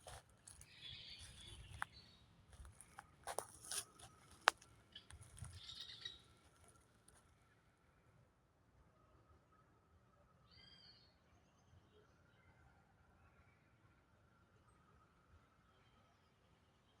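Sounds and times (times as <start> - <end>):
faint bird chirping: 0.6 - 2.3, 4.9 - 6.5.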